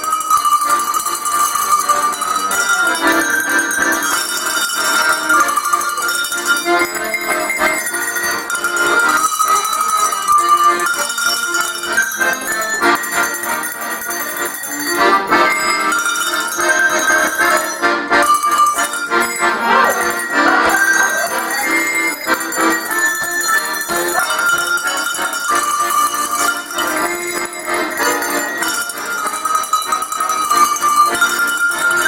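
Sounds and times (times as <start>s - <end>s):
accordion chords: 0.0s - 32.0s
tuned cowbells ringing: 0.0s - 32.0s.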